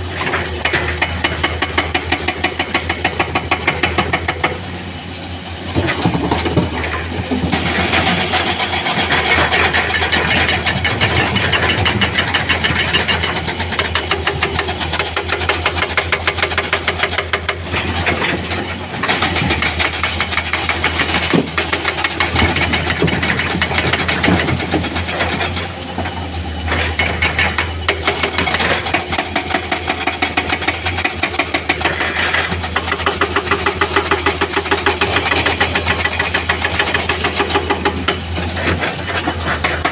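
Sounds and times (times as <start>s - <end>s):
heavy machinery diesel engines: 0.0s - 39.9s.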